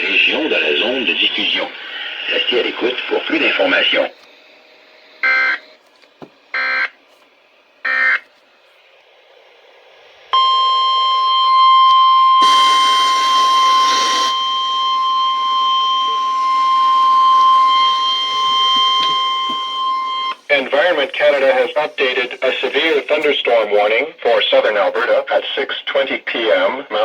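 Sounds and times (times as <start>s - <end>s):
steady alarm tone: 1.0s - 5.8s, 6.5s - 7.0s, 7.8s - 8.3s, 10.2s - 24.6s
electronic data bursts: 12.4s - 23.8s
rush of static: 20.4s - 24.0s.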